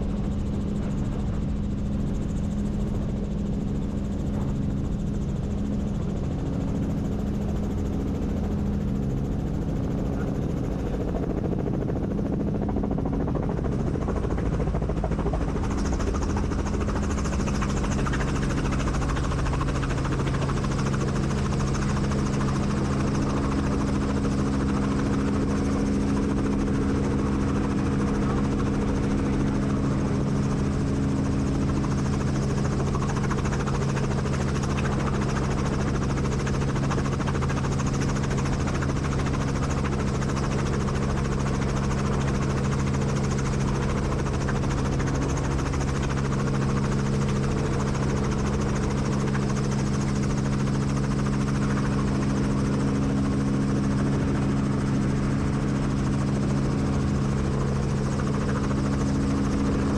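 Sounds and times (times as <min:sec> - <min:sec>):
helicopter engine and rotor drone: 0:00.0 - 0:59.9.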